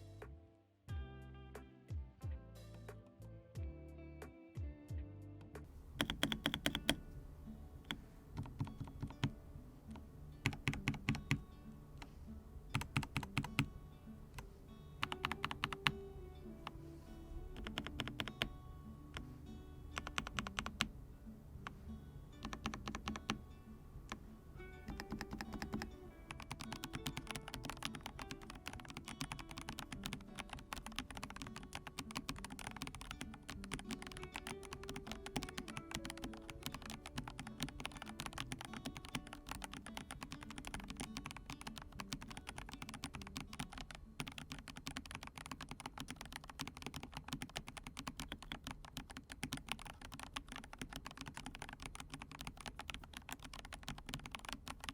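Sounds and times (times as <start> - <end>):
soft background music: 0.0 - 54.9
typing on mechanical keyboard: 5.9 - 7.1, 7.8 - 9.4, 10.4 - 11.4, 12.7 - 13.7, 15.0 - 16.0, 17.5 - 19.3, 20.0 - 20.9, 22.4 - 23.4, 24.9 - 54.9.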